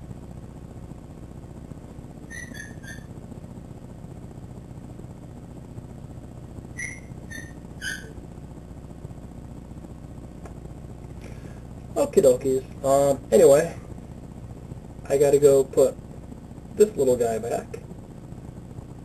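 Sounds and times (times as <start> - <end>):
steady low hum: 0.0 - 19.0
newborn puppy squeaking: 2.3 - 3.1, 6.8 - 8.2.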